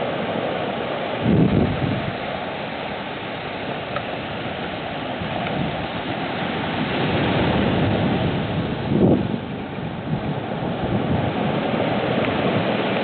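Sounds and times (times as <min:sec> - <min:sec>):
wind and rain rushing: 0:00.0 - 0:13.0
wind gusting on microphone: 0:00.0 - 0:13.0.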